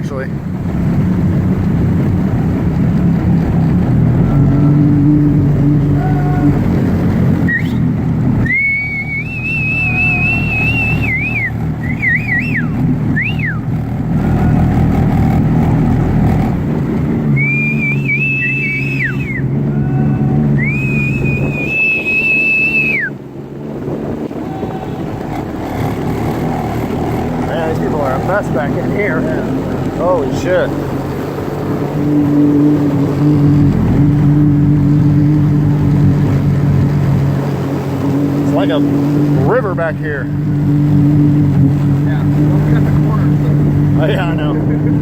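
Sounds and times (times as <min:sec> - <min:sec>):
boat motor running: 0:00.0 - 0:45.0
high wavering whistle: 0:07.4 - 0:13.7, 0:17.3 - 0:19.5, 0:20.5 - 0:23.2.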